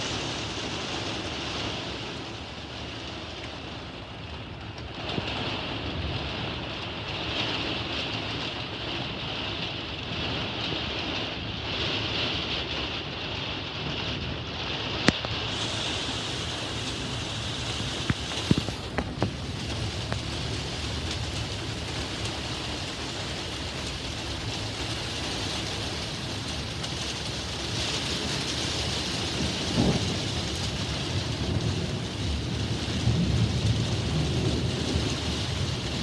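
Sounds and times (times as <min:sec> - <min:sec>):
heavy rain pouring: 0:00.0 - 0:36.0
rolling thunder: 0:15.4 - 0:36.0.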